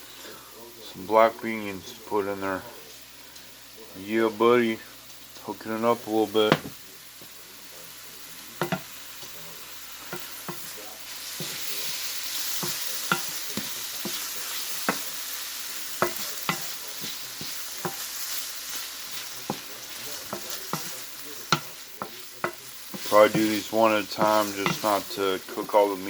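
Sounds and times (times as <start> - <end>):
meat sizzling in a hot pan: 0.0 - 26.0
utensil tapping against pan: 8.6 - 8.9, 11.4 - 15.2, 16.0 - 23.6, 24.2 - 24.9.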